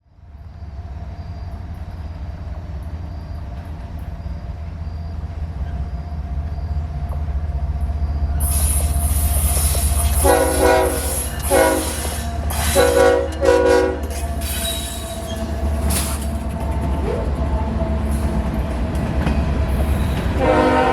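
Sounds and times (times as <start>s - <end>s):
wheels squealing on rail: 0.5s - 7.0s, 7.9s - 20.9s
locomotive horn blasts: 10.1s - 14.2s, 20.4s - 20.9s.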